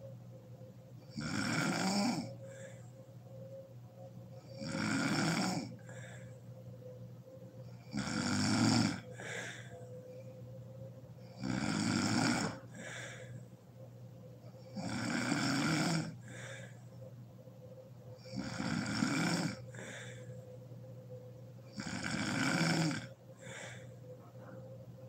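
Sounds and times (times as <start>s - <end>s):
woman snoring loudly: 1.1s - 2.6s, 4.5s - 6.1s, 7.9s - 9.6s, 11.3s - 13.2s, 14.6s - 16.5s, 18.2s - 20.2s, 21.7s - 23.8s
soft breath: 2.4s - 3.6s, 5.7s - 7.5s, 9.1s - 11.2s, 12.4s - 14.6s, 16.1s - 18.1s, 19.6s - 21.6s, 23.1s - 25.0s.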